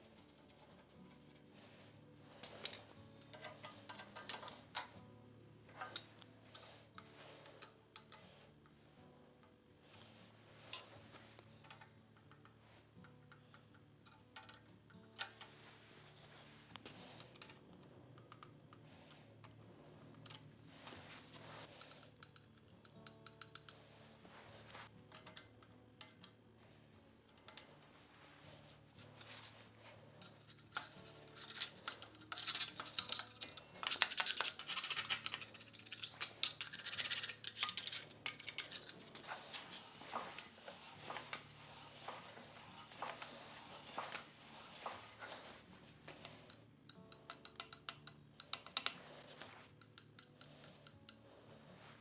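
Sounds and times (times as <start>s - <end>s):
metal parts clicking and clinking: 2.4s - 5.0s, 14.0s - 15.5s, 25.1s - 26.3s, 30.2s - 39.8s.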